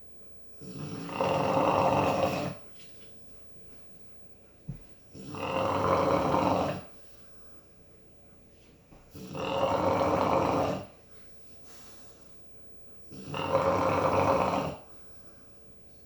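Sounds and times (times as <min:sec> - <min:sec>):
quiet breathing: 0:00.4 - 0:16.0
person snoring: 0:00.6 - 0:02.7, 0:05.1 - 0:07.0, 0:09.2 - 0:11.0, 0:13.1 - 0:14.9.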